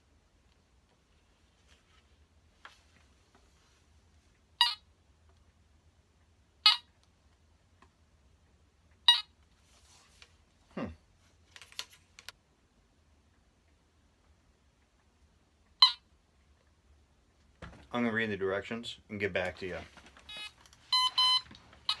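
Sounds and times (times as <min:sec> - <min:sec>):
metal detector beeping: 0:20.3 - 0:22.0.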